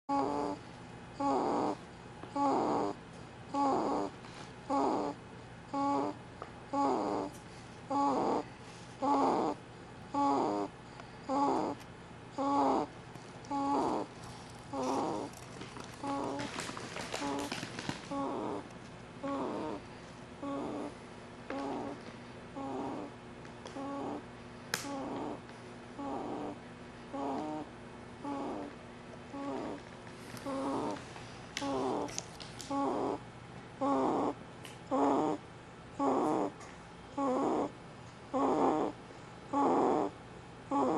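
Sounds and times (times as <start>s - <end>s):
pet snoring: 0.1s - 25.4s, 26.0s - 29.8s, 30.4s - 31.0s, 31.6s - 33.2s, 33.8s - 40.9s
person snoring: 4.7s - 7.3s, 7.9s - 11.8s, 12.4s - 12.9s, 13.5s - 14.1s, 14.7s - 15.4s, 18.1s - 18.6s, 19.2s - 19.8s, 20.4s - 20.9s, 21.5s - 22.0s, 22.6s - 23.1s, 23.8s - 24.2s, 24.8s - 25.4s, 26.0s - 27.6s, 28.2s - 28.7s, 29.3s - 29.8s, 30.4s - 31.0s, 38.4s - 40.1s.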